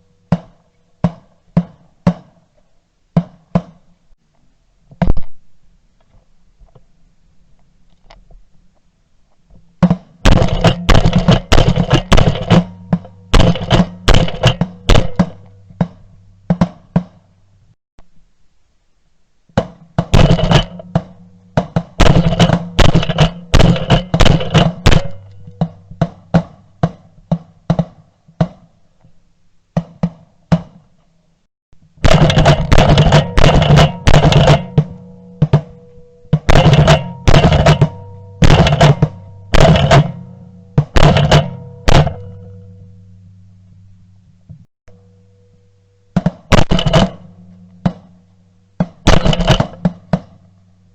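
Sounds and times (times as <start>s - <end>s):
music with heavy drums and bass: 9.8s - 17.3s, 19.6s - 28.0s, 31.8s - 43.5s, 44.4s - 50.6s.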